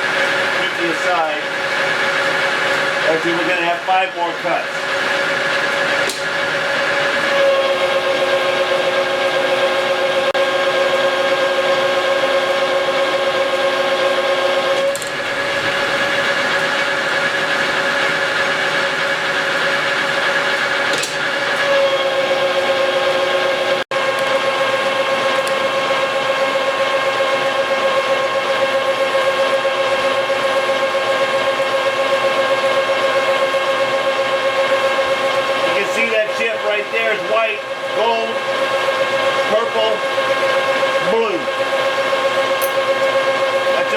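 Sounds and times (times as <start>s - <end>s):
lathe cutting tool singing: 6.9s - 16.1s.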